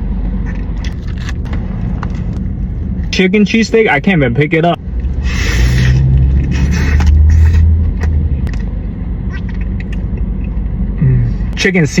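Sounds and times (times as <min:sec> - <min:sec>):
heavy low rumble: 0:00.0 - 0:12.0
biting and chewing food: 0:00.4 - 0:02.5, 0:05.0 - 0:10.6.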